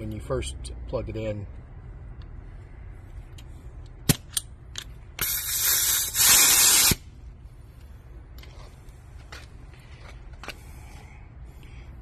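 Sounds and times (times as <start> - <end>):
air hissing out: 5.2 - 7.1.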